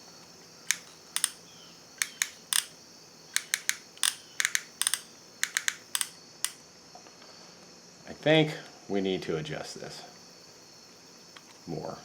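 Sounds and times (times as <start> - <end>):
soldering gun trigger clicking: 0.7 - 1.4, 2.0 - 2.7, 3.4 - 6.6.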